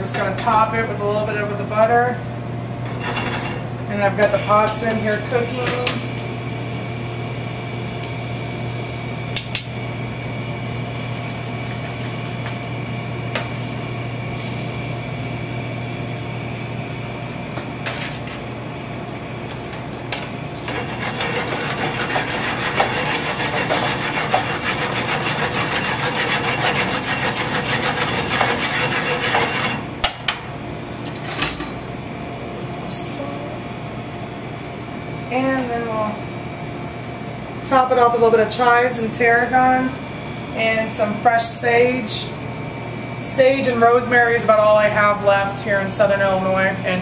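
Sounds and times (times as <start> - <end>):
kitchen equipment humming: 0.0 - 47.0
pan sizzling: 20.6 - 29.7.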